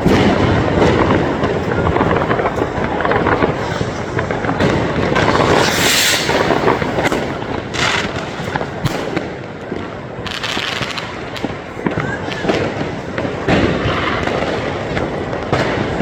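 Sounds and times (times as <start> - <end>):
fireworks crackling and popping: 0.0 - 16.0
brief hisses: 5.4 - 6.6.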